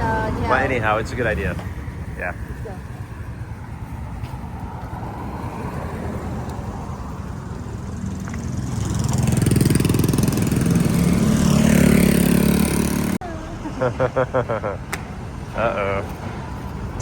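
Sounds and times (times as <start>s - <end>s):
traffic background: 0.0s - 17.0s
small vehicle engine running: 7.7s - 13.2s.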